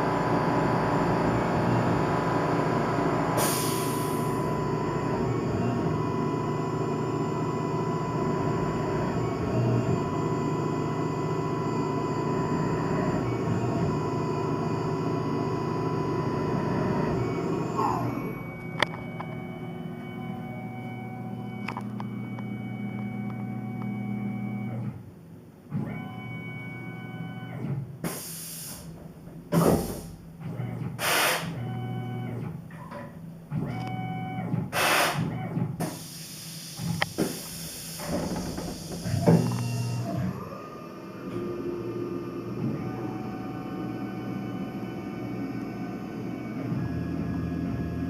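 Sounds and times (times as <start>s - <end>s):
milling machine whine: 0.0s - 25.0s, 36.0s - 48.0s
short hissing bursts: 31.0s - 31.5s, 34.8s - 35.2s, 35.8s - 38.0s.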